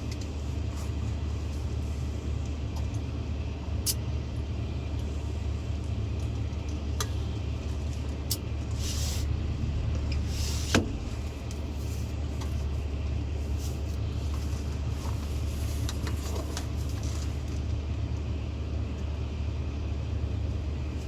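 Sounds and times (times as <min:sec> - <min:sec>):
diesel engine droning: 0:00.0 - 0:21.0
short hisses: 0:08.8 - 0:09.3.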